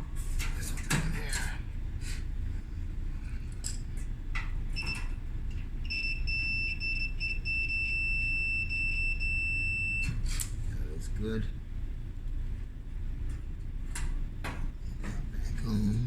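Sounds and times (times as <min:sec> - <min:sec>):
multimeter continuity beeping: 0:04.8 - 0:05.2, 0:05.8 - 0:10.3.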